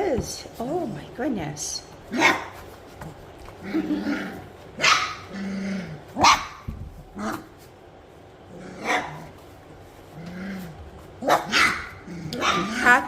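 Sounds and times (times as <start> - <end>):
puppies grumbling: 2.0 - 13.0
puppies barking: 3.7 - 7.6, 8.7 - 9.4, 11.2 - 13.0.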